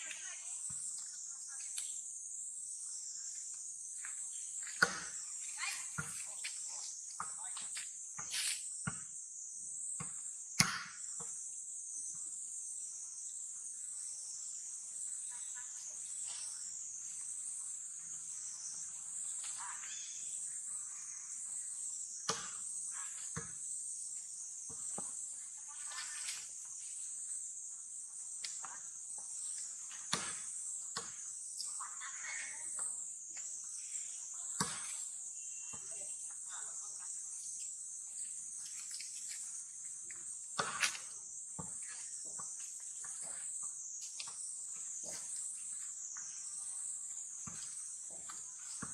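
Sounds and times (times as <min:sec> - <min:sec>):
insects droning: 0:00.0 - 0:48.9.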